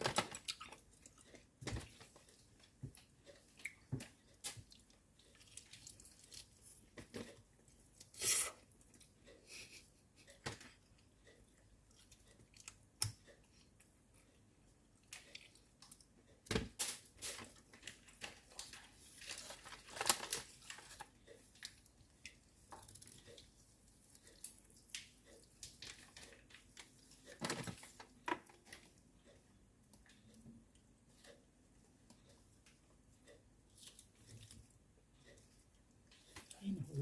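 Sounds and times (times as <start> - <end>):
person chewing chicken: 0.2 - 16.4, 18.5 - 27.4.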